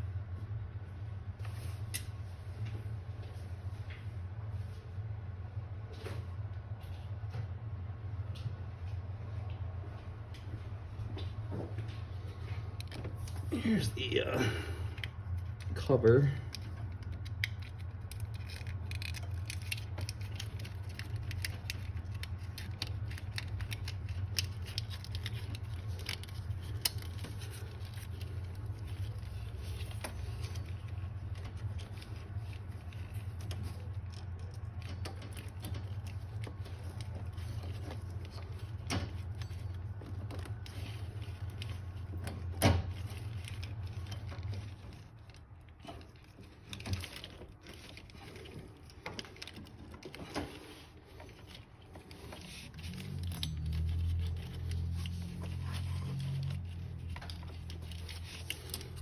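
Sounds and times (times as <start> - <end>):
steady low hum: 0.0 - 59.0
plastic parts clicking: 15.0 - 59.0.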